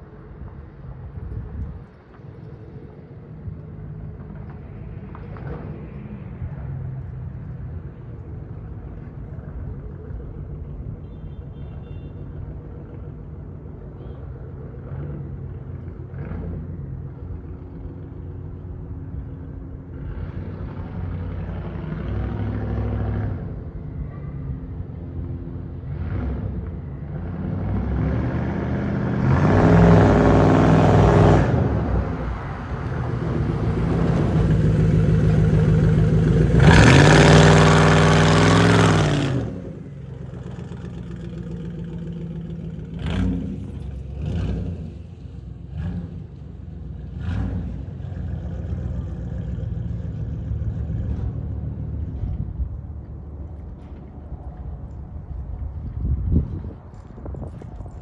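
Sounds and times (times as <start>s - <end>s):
truck exhaust idling and revving: 14.6s - 58.0s.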